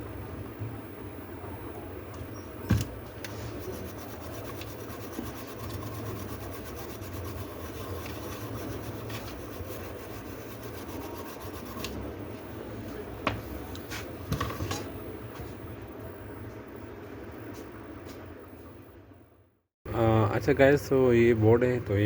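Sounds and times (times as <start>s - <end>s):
brush scrubbing circuit board: 3.2s - 12.1s.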